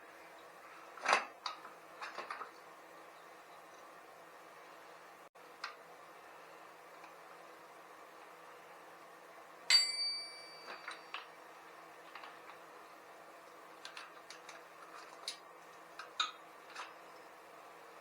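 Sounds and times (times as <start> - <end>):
metal tools clinking: 9.7 - 11.2.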